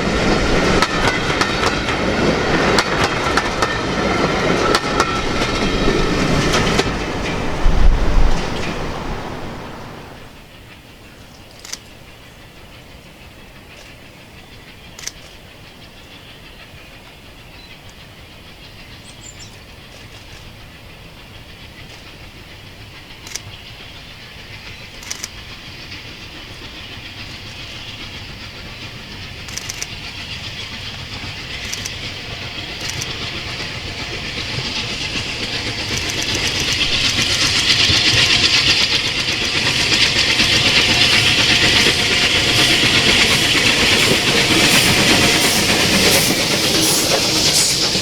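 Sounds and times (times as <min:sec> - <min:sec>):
steam train approaching: 0:00.0 - 0:48.0
sharp clicks: 0:35.8 - 0:38.0.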